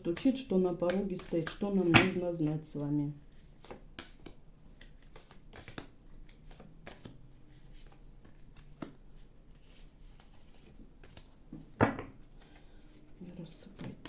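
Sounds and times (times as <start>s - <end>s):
cards being shuffled: 0.0s - 14.0s
slap of cards: 0.9s - 2.6s, 3.6s - 7.2s, 8.6s - 9.0s.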